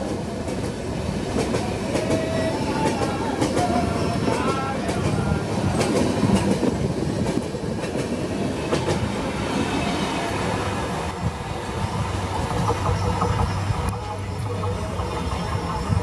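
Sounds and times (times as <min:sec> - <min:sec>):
train passing at speed: 0:00.0 - 0:16.0
wheels clattering over rail joints: 0:12.3 - 0:16.0.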